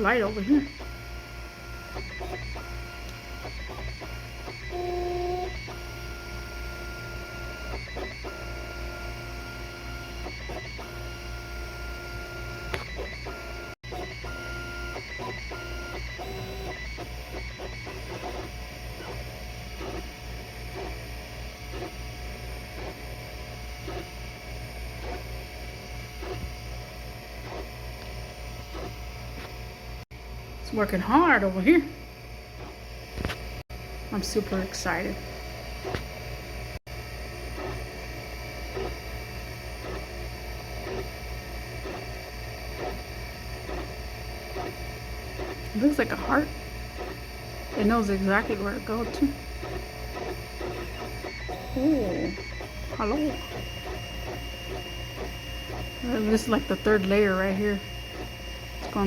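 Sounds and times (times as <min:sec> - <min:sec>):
stepper motors whining: 0:00.0 - 0:30.1, 0:30.7 - 0:59.0.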